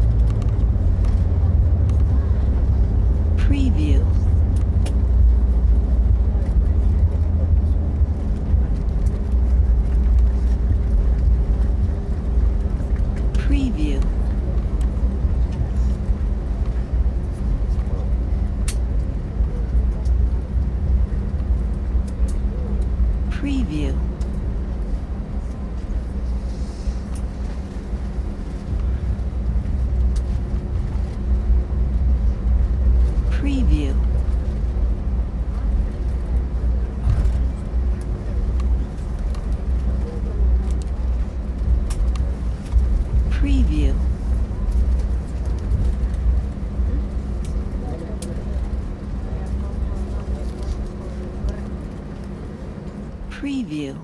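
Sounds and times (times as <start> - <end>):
deep rumble of jet engines: 0.0 - 54.0
airflow noise: 25.5 - 31.2.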